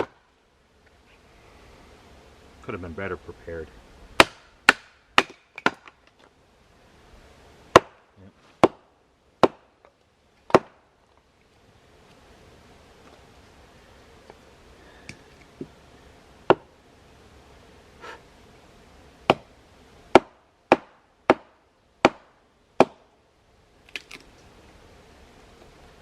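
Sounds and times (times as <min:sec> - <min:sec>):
blade chopping firewood: 0:00.0 - 0:00.2, 0:04.2 - 0:06.2, 0:07.7 - 0:10.9, 0:16.4 - 0:16.7, 0:19.2 - 0:23.1.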